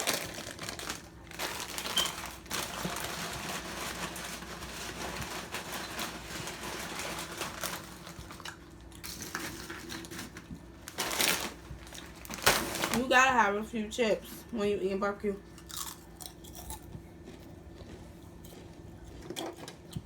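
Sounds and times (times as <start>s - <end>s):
light crinkling: 9.2s - 13.3s
chewing and mouth noises: 15.5s - 20.0s.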